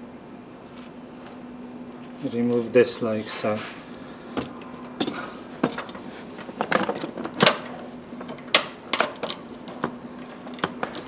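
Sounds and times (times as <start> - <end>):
faint steady hum: 0.0 - 11.0
metal tools clinking and knocking: 4.4 - 9.4.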